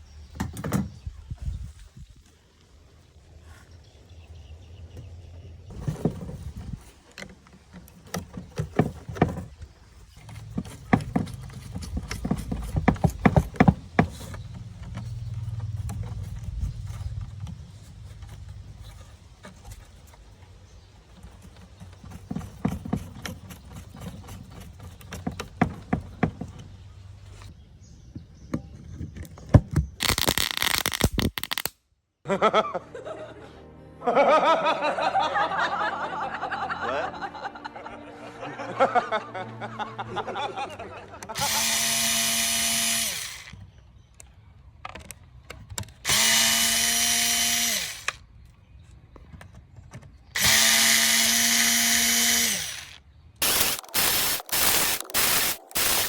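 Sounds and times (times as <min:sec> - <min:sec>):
tools and parts clicking: 0:10.2 - 0:16.5, 0:49.2 - 0:56.0
loud hissing burst: 0:53.4 - 0:56.0.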